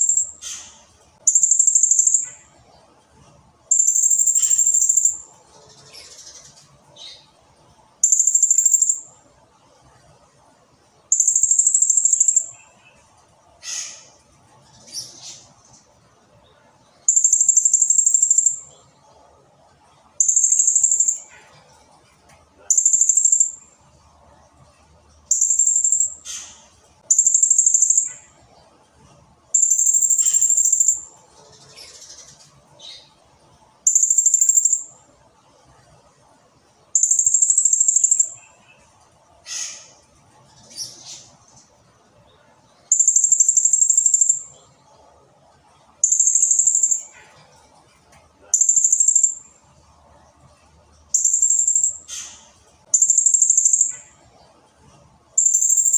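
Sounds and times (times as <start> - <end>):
parrot high rapid trills: 3.7 - 5.2, 29.6 - 31.1, 51.1 - 54.2, 55.4 - 55.9.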